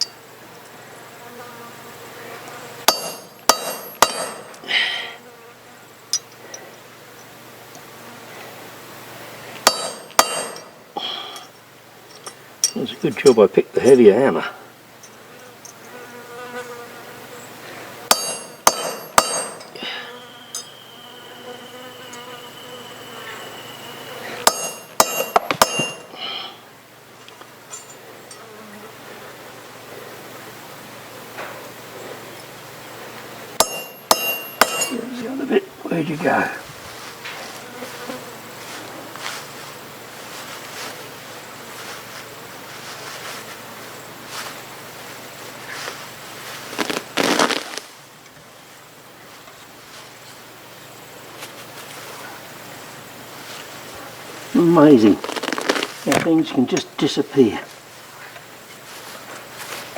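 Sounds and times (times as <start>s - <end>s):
wind-like background noise: 0.0s - 15.9s, 16.8s - 59.9s
insect buzzing: 0.9s - 6.1s, 15.1s - 26.9s, 28.2s - 29.7s, 33.0s - 48.1s, 50.0s - 56.8s
hammer striking metal: 2.9s - 4.6s, 9.7s - 10.8s, 18.1s - 19.8s, 24.5s - 26.1s, 33.6s - 35.0s.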